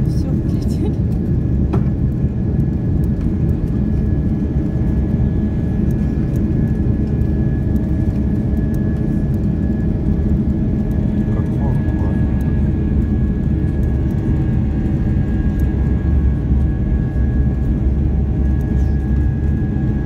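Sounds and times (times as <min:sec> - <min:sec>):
jet engines rumbling: 0:00.0 - 0:20.0.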